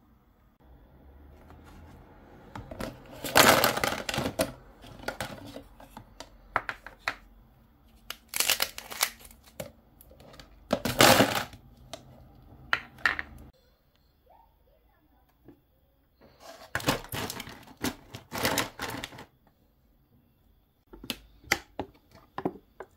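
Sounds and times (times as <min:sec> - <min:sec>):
hard objects clicking and clattering: 0:02.6 - 0:07.2, 0:08.1 - 0:12.1, 0:16.7 - 0:19.3.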